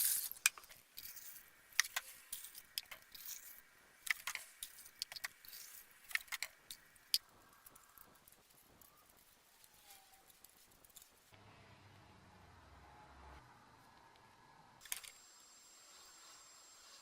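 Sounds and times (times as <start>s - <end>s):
small hard objects clicking: 0.0s - 11.3s.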